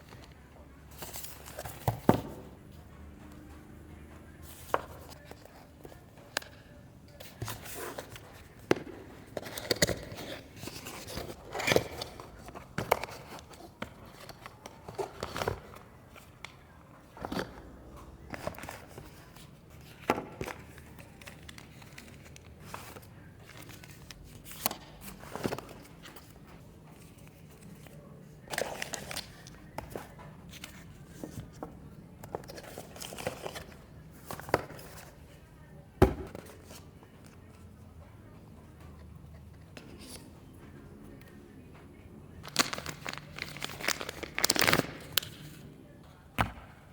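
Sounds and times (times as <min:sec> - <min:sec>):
packaging clicks and knocks: 0:42.4 - 0:45.3
wrapping crinkling: 0:42.4 - 0:45.3.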